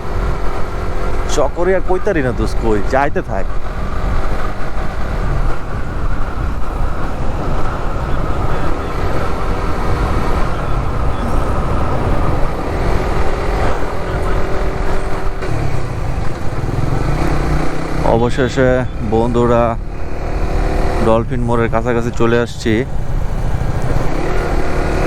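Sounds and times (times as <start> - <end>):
motorcycle engine and road noise: 0.0 - 25.0.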